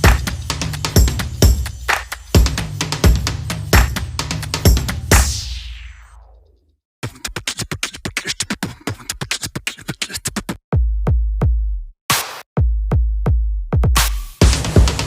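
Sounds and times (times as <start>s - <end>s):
electronic music with heavy bass: 0.0s - 6.4s, 13.9s - 15.0s.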